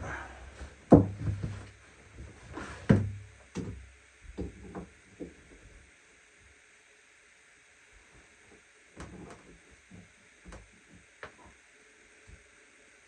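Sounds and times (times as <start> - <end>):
knocks and thuds of objects: 0.9 - 1.7, 2.8 - 5.3.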